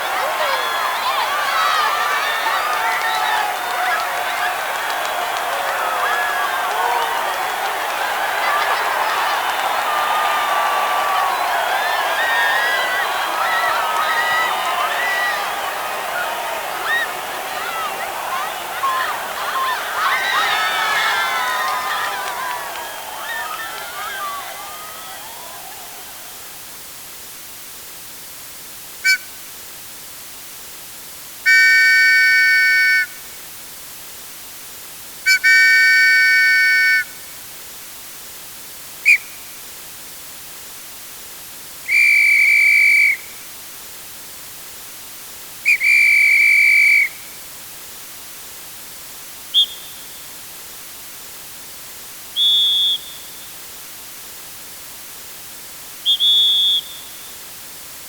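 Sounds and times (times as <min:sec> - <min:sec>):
sports whistles blowing: 0:00.0 - 0:26.4, 0:29.0 - 0:29.4, 0:31.5 - 0:33.2, 0:35.3 - 0:37.3, 0:39.0 - 0:39.5, 0:41.8 - 0:43.4, 0:45.6 - 0:47.4, 0:49.5 - 0:50.2, 0:52.4 - 0:53.6, 0:56.0 - 0:57.4
steady hiss: 0:00.0 - 0:58.0.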